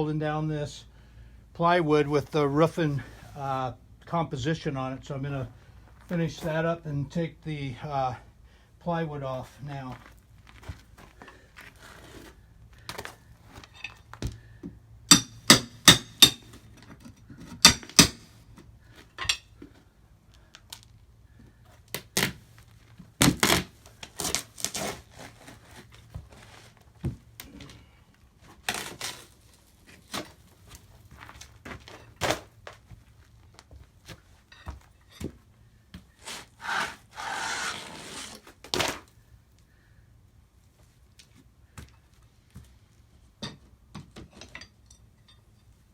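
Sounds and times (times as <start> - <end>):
ringing metal strikes: 15.1 - 16.5
rasping scrape: 36.2 - 38.6.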